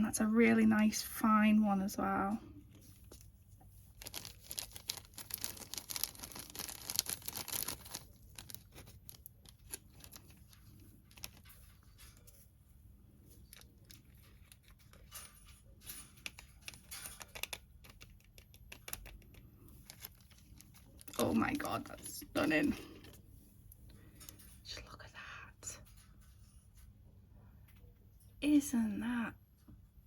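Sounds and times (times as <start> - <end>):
packaging crinkling and rustling: 2.7 - 12.5, 13.3 - 23.2.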